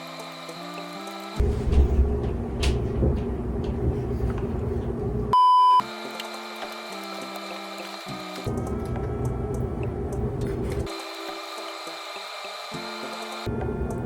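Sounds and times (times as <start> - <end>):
background music: 0.0 - 2.8, 5.8 - 14.0
censor bleep: 5.4 - 5.8.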